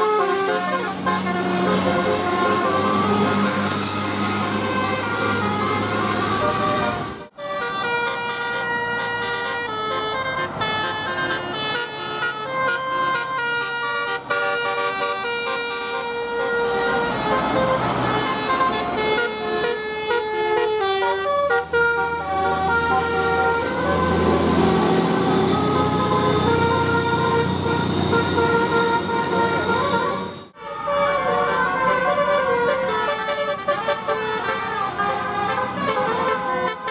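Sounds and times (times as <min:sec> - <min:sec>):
bus engine hum: 0:00.0 - 0:36.9
multi-tone air horns playing tune: 0:00.0 - 0:36.9.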